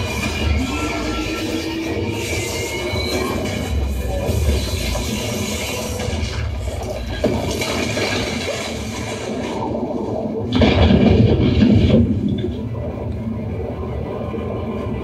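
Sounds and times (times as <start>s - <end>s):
deep rumble: 0.0s - 15.0s.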